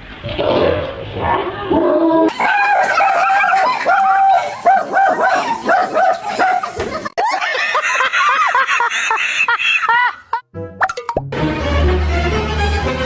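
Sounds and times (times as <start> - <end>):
dog yowling and yipping: 2.3 - 6.8.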